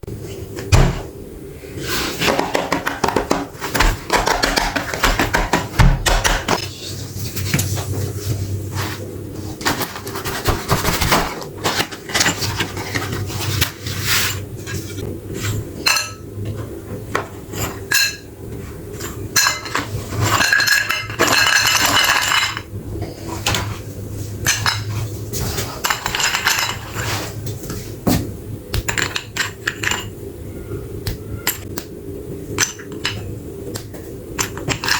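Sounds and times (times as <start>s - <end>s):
low steady hum: 0.0s - 34.9s.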